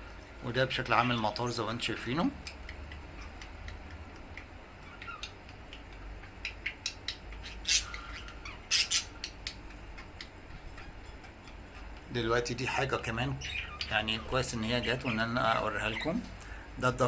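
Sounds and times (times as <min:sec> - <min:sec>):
budgerigars chirping: 0:02.4 - 0:16.2
budgerigar squawks: 0:06.6 - 0:09.2.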